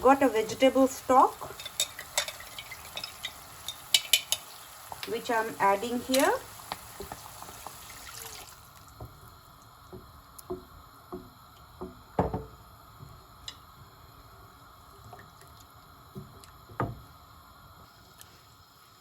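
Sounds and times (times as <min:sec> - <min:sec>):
stock hissing in a pan: 0:00.0 - 0:09.1.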